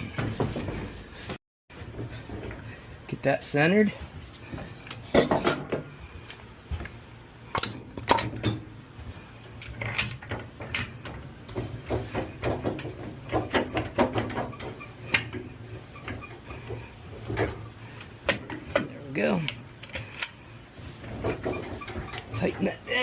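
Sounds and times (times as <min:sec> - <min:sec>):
metal clanks and clicks: 0:09.6 - 0:22.8.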